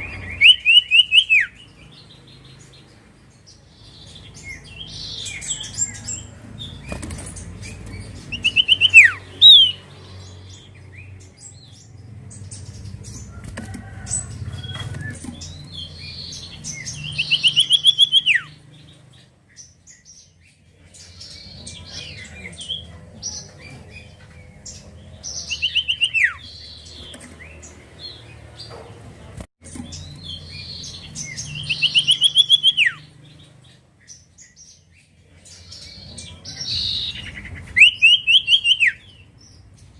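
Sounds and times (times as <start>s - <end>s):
bird trilling: 0.0s - 1.7s, 8.0s - 9.8s, 14.6s - 18.6s, 30.0s - 33.1s, 35.6s - 39.1s.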